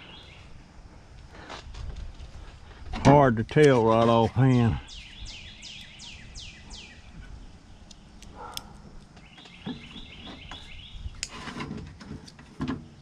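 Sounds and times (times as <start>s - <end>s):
bird singing: 0.0s - 0.6s, 3.8s - 11.3s
sharp clicks: 7.8s - 9.3s.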